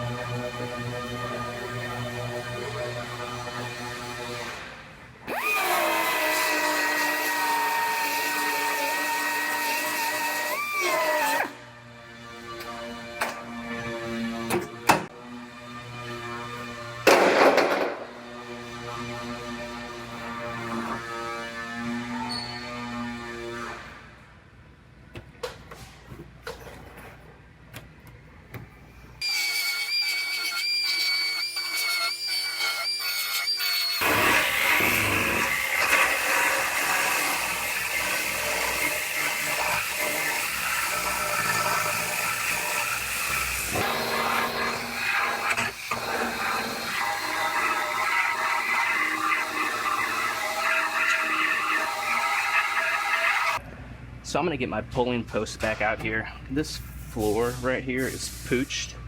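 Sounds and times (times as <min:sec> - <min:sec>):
power tool cutting sheet metal: 0:00.0 - 0:11.6, 0:12.4 - 0:24.1, 0:29.2 - 0:53.6.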